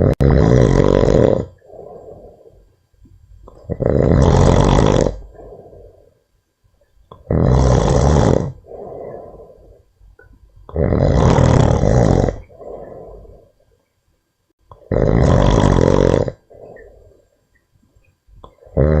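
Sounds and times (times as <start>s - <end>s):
loud snores: 0.0s - 2.3s, 3.6s - 6.0s, 7.2s - 9.5s, 10.7s - 13.3s, 14.7s - 16.6s, 18.5s - 19.0s
soft breath out: 1.6s - 2.8s, 5.2s - 6.3s, 8.6s - 10.0s, 12.4s - 13.8s.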